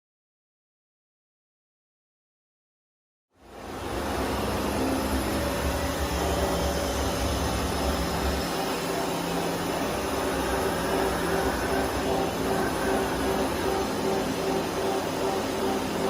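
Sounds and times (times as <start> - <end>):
lathe mechanical hum and hiss: 3.4 - 16.0.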